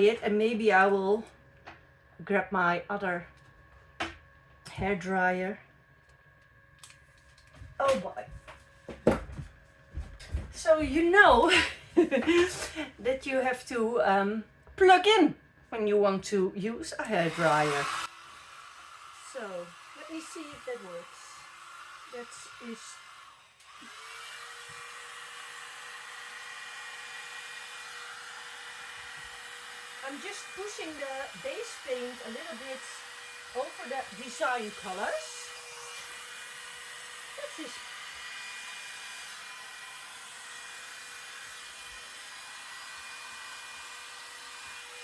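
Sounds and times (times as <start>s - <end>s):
hairdryer motor whine: 6.8s - 12.9s, 16.9s - 45.0s.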